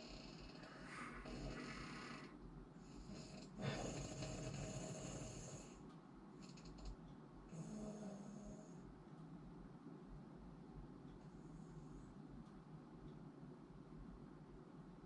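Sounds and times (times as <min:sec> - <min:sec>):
person snoring: 0:00.0 - 0:02.3, 0:03.0 - 0:05.8, 0:07.5 - 0:08.8.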